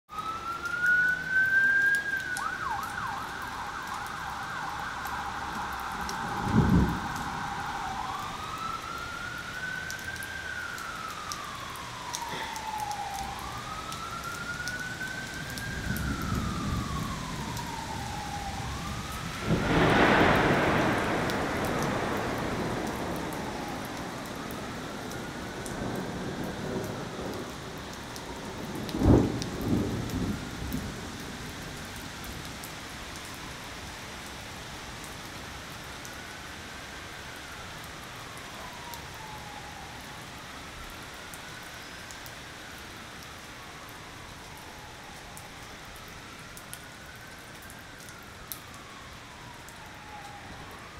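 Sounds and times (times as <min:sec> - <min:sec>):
siren wailing: 0:00.1 - 0:50.9
steady rain: 0:00.1 - 0:50.9
thunder rumbling: 0:02.4 - 0:32.5.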